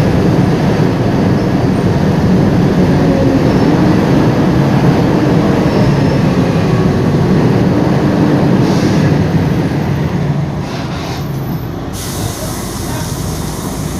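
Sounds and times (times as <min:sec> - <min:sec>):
bus engine drone: 0:00.0 - 0:13.9
brief hissing: 0:11.9 - 0:13.9.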